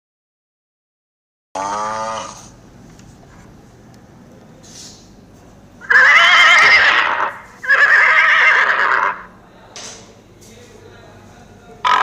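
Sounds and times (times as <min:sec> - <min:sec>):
horse whinnying: 0:01.6 - 0:02.5, 0:05.8 - 0:09.3.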